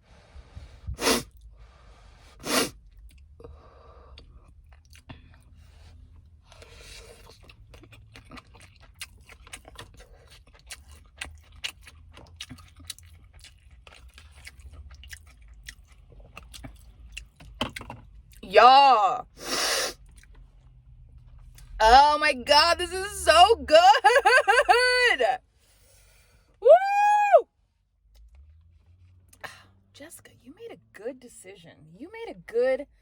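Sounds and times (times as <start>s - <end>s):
close chewing with wet mouth clicks: 4.1s - 18.4s, 20.0s - 20.6s
sharp breath: 19.4s - 20.0s.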